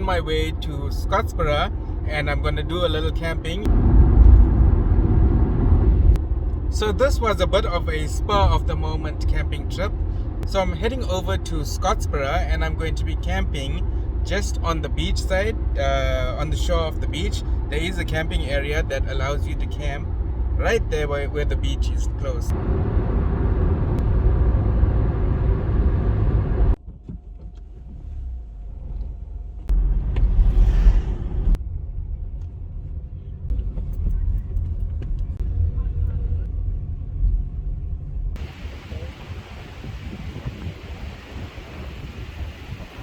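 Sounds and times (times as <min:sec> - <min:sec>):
car engine and road noise: 0:00.0 - 0:43.0
wind buffeting microphone: 0:38.3 - 0:43.0.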